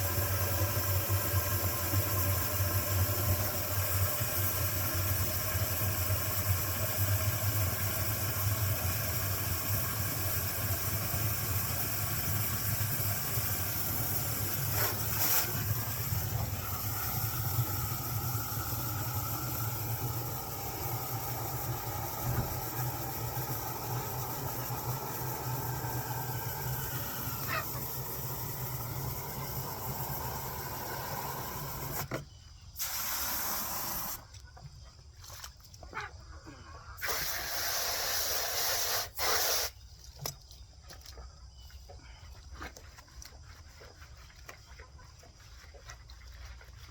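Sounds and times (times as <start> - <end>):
low motor hum with hiss: 0.0 - 34.4.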